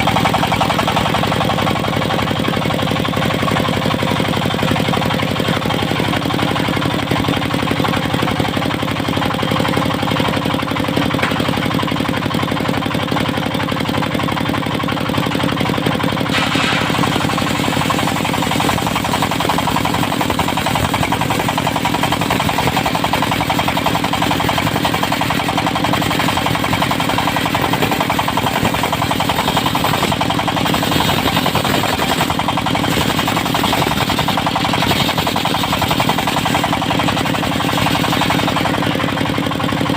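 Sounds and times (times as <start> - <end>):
diesel engine running: 0.0 - 39.9
saw blade cutting wood: 11.0 - 12.0, 16.2 - 39.0.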